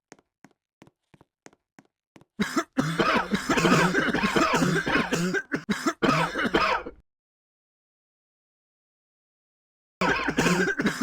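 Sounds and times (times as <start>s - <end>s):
loud overlapping coughing: 2.4s - 7.0s, 10.0s - 11.0s.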